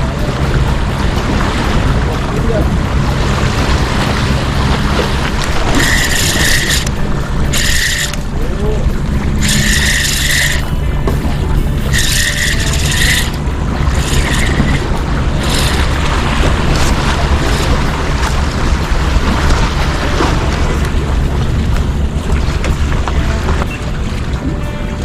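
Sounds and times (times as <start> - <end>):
sea rumble: 0.0 - 25.0
wind on microphone: 0.0 - 25.0.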